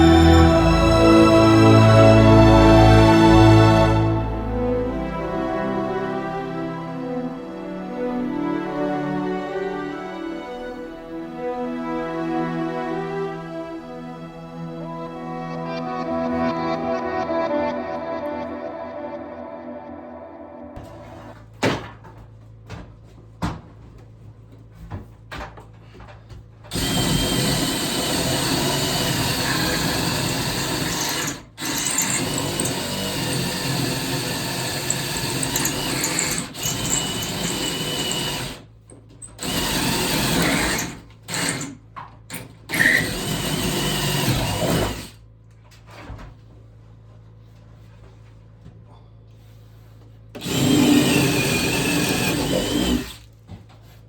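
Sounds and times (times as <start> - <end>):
power drill running: 0.0 - 4.4, 26.7 - 45.2, 50.4 - 53.3.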